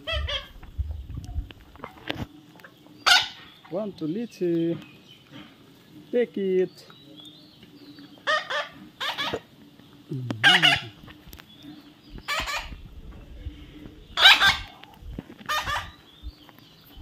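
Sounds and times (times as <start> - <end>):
parrot squawking: 0.0 - 0.6, 3.0 - 3.4, 8.2 - 9.5, 10.4 - 11.1, 12.2 - 12.8, 14.2 - 14.8, 15.4 - 16.1.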